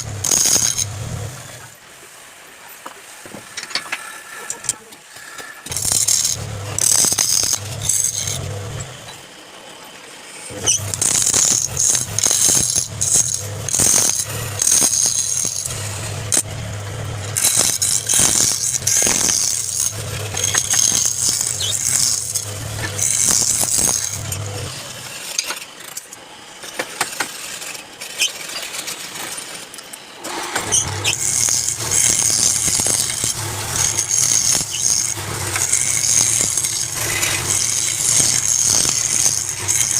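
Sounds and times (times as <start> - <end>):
clatter and clicks: 3.5 - 9.2, 10.5 - 39.9
hiss of tool cutting wood: 3.7 - 8.5, 17.3 - 25.4, 30.2 - 39.9
wood lathe humming: 5.2 - 9.2, 10.5 - 25.3, 30.2 - 39.9.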